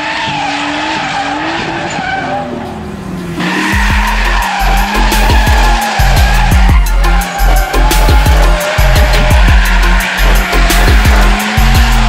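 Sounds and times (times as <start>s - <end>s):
car engine revving: 0.0s - 12.0s
tyres skidding: 0.0s - 12.0s
music with heavy bass beat: 3.5s - 12.0s.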